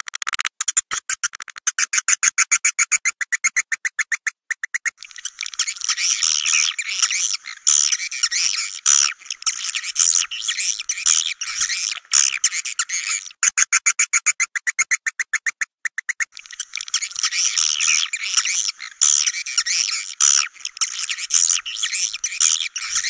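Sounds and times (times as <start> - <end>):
sharp bird chirps: 0.7 - 23.0
twittering chatter of birds: 5.0 - 13.4, 16.4 - 23.0.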